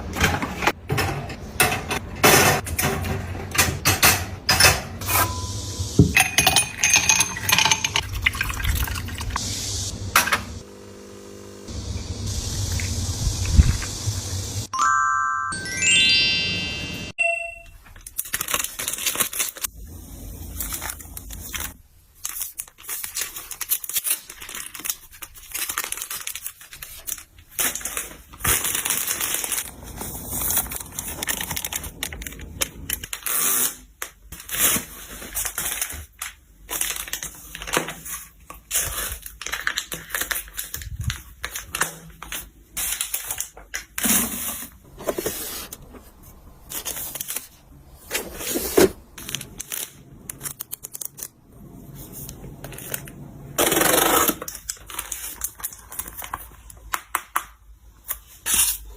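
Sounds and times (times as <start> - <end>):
plastic packaging crinkling and tearing: 17.8 - 44.6, 45.6 - 57.2.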